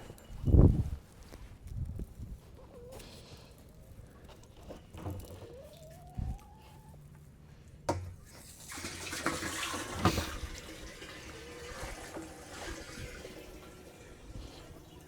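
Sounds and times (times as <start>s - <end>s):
hose water splashing: 8.2s - 15.0s.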